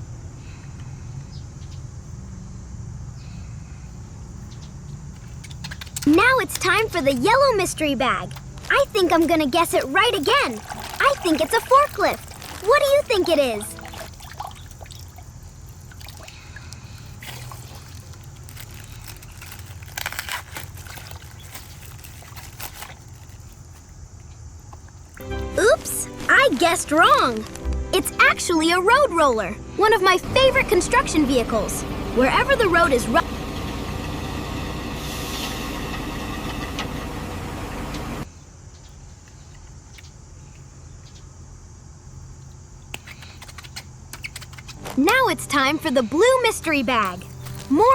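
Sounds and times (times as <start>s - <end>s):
sharp crackles: 5.2s - 23.9s, 25.1s - 29.9s, 43.0s - 47.9s
water trickling and sloshing: 8.4s - 23.8s
steady low hum: 28.8s - 38.3s
vehicle engine droning: 29.6s - 38.2s.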